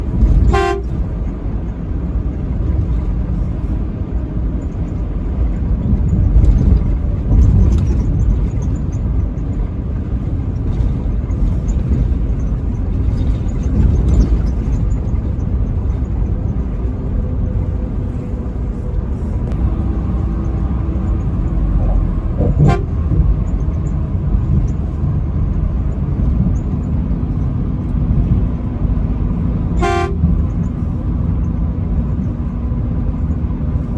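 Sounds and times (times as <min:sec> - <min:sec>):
truck engine and road rumble: 0:00.0 - 0:33.9
truck horn blast: 0:00.4 - 0:01.0, 0:22.4 - 0:23.2, 0:29.8 - 0:30.3.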